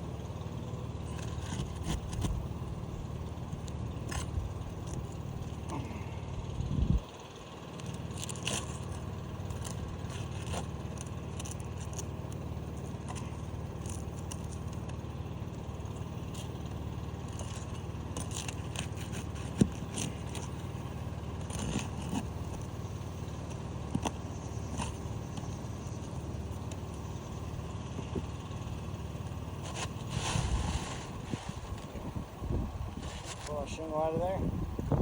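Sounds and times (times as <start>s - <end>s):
roof shingles scraping and clicking: 1.0s - 2.7s, 7.7s - 32.1s, 32.9s - 33.8s
steady low rumble: 1.1s - 7.4s, 25.2s - 35.0s.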